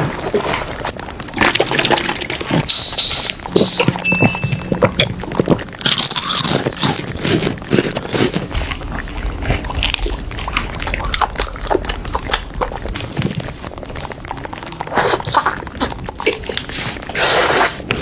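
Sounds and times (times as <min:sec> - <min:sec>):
wet chewing of soup: 0:00.0 - 0:18.0
low rumble: 0:08.4 - 0:16.3.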